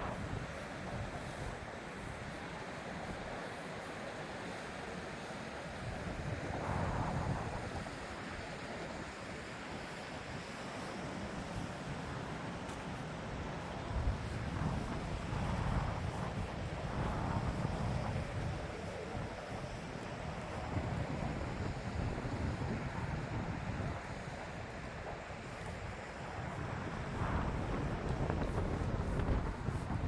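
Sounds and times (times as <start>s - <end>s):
wind gusting over microphone: 0.0s - 2.3s, 5.8s - 10.0s, 13.2s - 30.0s.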